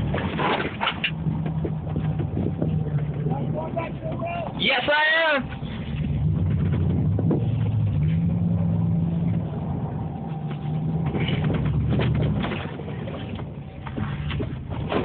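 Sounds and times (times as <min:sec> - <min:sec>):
pickup engine revving: 0:00.0 - 0:15.0.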